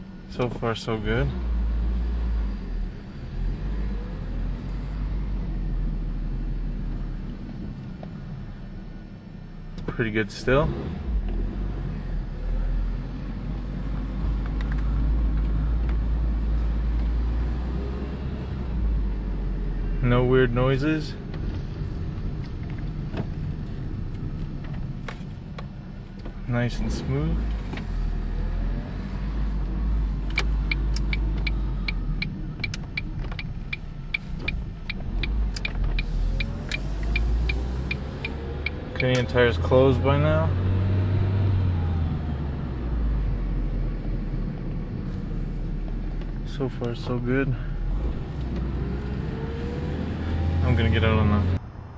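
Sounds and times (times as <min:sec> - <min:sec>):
road and engine rumble in car: 0:00.0 - 0:51.9
turn signal ticking: 0:29.2 - 0:39.6, 0:47.9 - 0:51.0.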